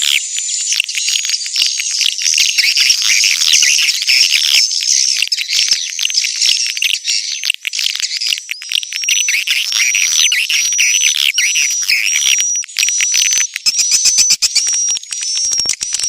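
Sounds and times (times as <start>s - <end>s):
swiftlets chittering and clicking: 0.0s - 16.0s.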